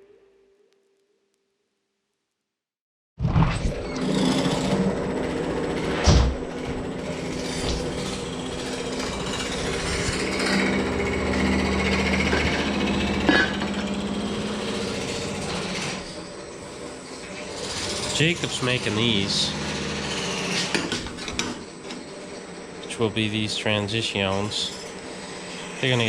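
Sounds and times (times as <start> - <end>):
humming drone: 3.8 - 26.0.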